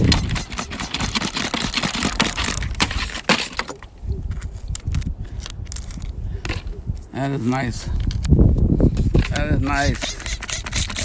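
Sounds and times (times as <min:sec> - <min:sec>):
stones clattering and scraping: 0:00.0 - 0:06.7, 0:08.9 - 0:11.0.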